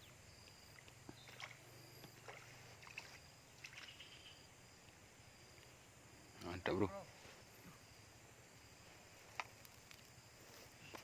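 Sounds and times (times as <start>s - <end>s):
faint water splashes: 0.4s - 4.3s.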